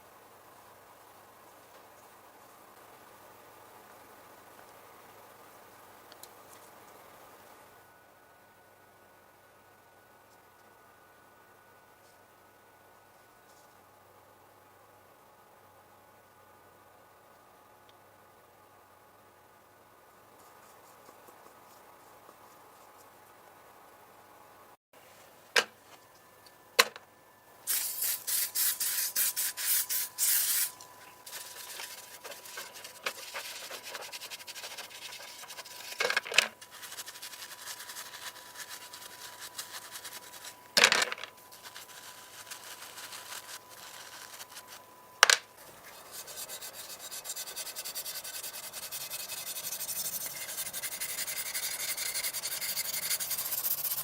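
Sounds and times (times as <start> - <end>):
hiss: 27.7 - 32.1
clicks and knocks of small parts: 40.8 - 41.3.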